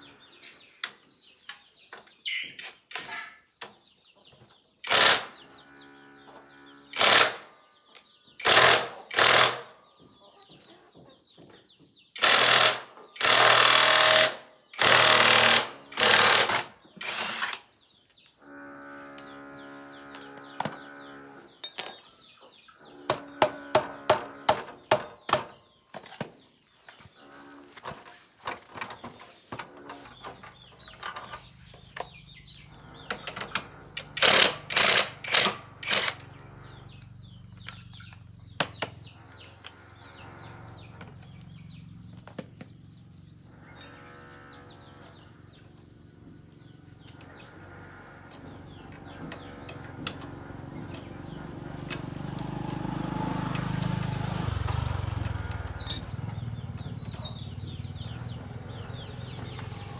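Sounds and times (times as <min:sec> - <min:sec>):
pneumatic air tool bursts: 0:04.8 - 0:05.4, 0:06.9 - 0:07.5, 0:08.4 - 0:09.7, 0:12.2 - 0:17.7, 0:34.0 - 0:36.3
metal parts clicking and knocking: 0:21.6 - 0:22.2, 0:33.1 - 0:36.4, 0:41.0 - 0:42.7, 0:55.6 - 0:57.2.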